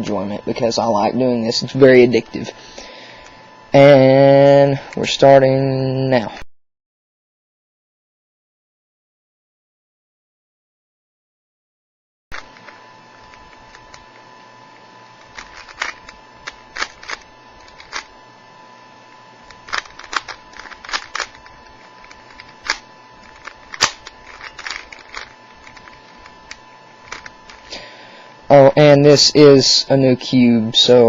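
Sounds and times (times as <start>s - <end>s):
puzzle cube clicking as turned: 15.2s - 18.1s, 19.5s - 27.7s.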